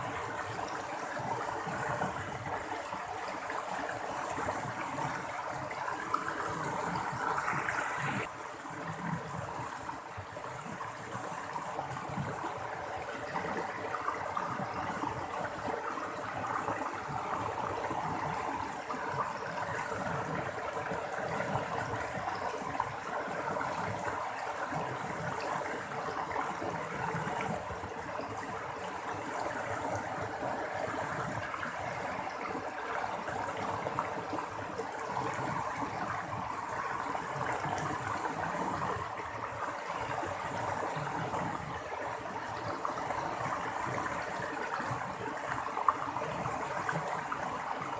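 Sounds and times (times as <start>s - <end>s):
running water babbling: 0.0s - 47.9s.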